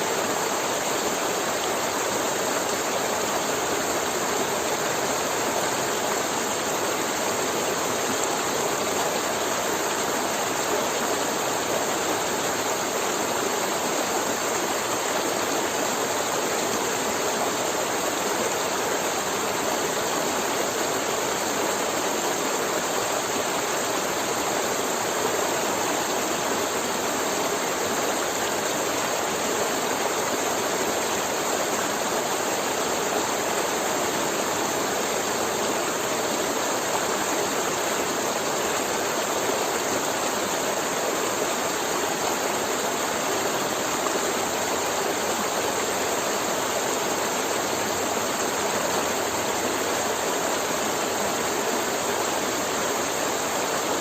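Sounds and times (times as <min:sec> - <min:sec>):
river flowing over rocks: 0:00.0 - 0:54.0.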